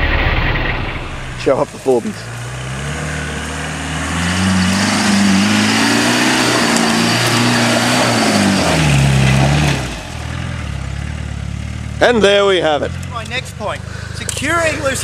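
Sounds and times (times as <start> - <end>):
engine revving hard: 0.0 - 11.2.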